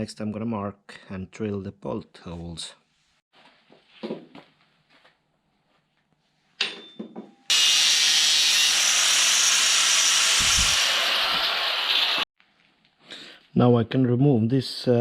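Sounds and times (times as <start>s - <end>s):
electric drill drilling steel: 7.5s - 12.3s.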